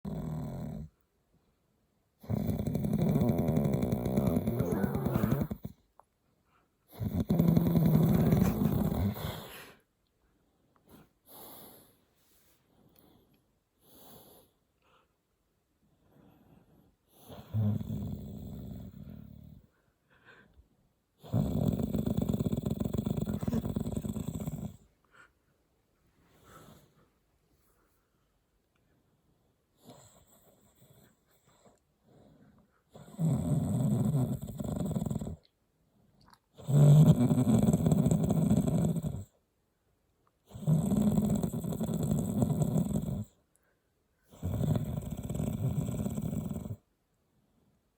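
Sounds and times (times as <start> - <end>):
person snoring: 2.3 - 5.7, 7.0 - 9.8, 21.2 - 24.8, 33.0 - 35.4, 44.3 - 46.8
faint breathing: 8.0 - 17.6, 18.9 - 20.9, 23.3 - 32.9.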